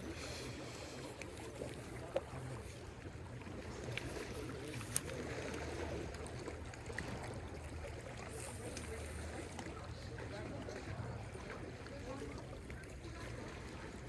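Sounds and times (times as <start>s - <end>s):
lake water rumbling: 0.0s - 14.0s
wind: 0.0s - 14.0s.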